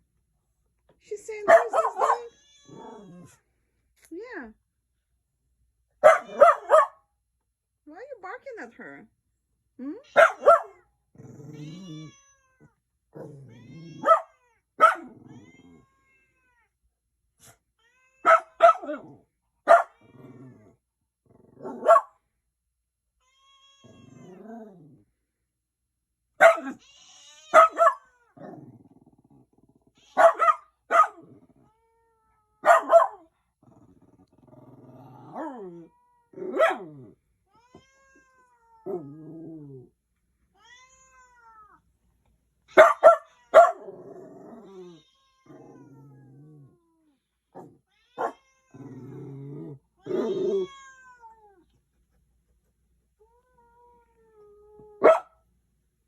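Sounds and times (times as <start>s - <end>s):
dog barking: 1.5s - 2.3s, 6.0s - 7.0s, 10.2s - 10.8s, 14.0s - 15.2s, 18.2s - 19.1s, 19.7s - 20.0s, 21.6s - 22.2s, 26.4s - 26.8s, 27.5s - 28.0s, 30.2s - 31.3s, 32.6s - 33.3s, 36.4s - 36.9s, 42.7s - 44.0s, 47.6s - 48.4s, 55.0s - 55.4s
cat growling and yowling: 1.8s - 3.5s, 10.0s - 16.7s, 17.4s - 22.0s, 23.4s - 25.2s, 26.6s - 40.0s, 42.7s - 51.7s, 53.3s - 55.2s.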